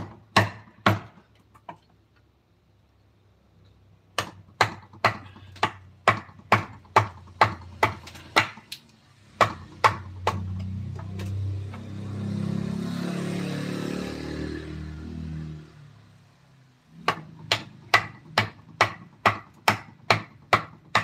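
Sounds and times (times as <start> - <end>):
mallet striking a chisel: 0.0 - 1.8, 4.2 - 8.7, 9.4 - 10.6, 17.0 - 21.0.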